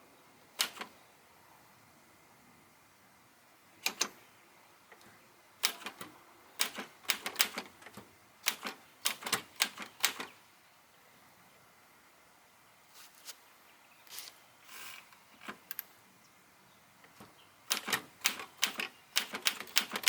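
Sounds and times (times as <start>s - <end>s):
manual typewriter keystrokes: 0.6s - 0.9s, 3.8s - 4.2s, 5.6s - 10.4s, 17.7s - 20.0s.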